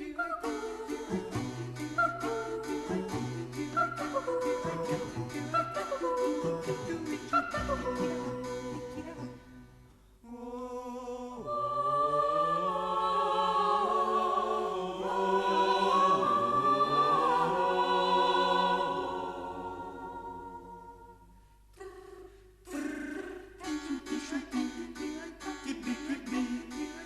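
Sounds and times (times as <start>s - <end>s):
choir holding chords: 0.0s - 9.4s, 10.3s - 21.3s
instrumental film music: 0.2s - 9.4s.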